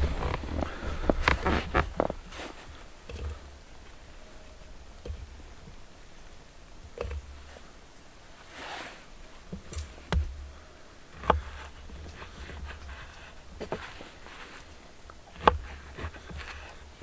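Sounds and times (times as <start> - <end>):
rustling swish: 0.0 - 2.9, 8.4 - 9.4
sharp knocks and clicks: 5.0 - 5.4, 7.0 - 7.4.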